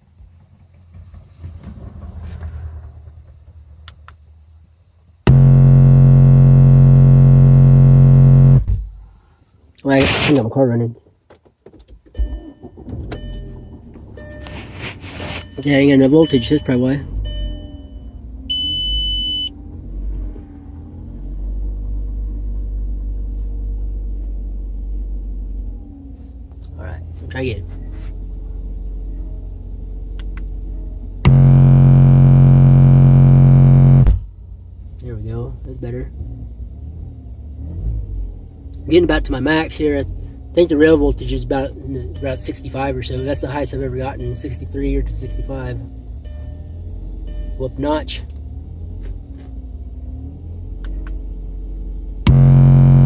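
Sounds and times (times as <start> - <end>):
quiet low rumble: 5.2 - 9.4, 27.8 - 35.0, 50.8 - 53.0
high electronic beep: 5.3 - 8.7, 31.3 - 34.2, 52.3 - 53.0
distorted subwoofer test tone: 5.3 - 9.0, 31.2 - 34.3, 52.2 - 53.0
car engine idling: 5.3 - 9.2, 30.2 - 34.8, 52.2 - 53.0.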